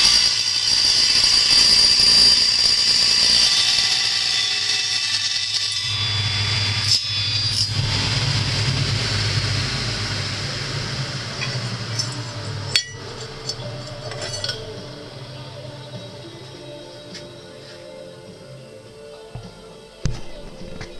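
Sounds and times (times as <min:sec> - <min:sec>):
circular saw winding down: 0:00.0 - 0:18.2
sharp metallic clinks: 0:11.4 - 0:15.1.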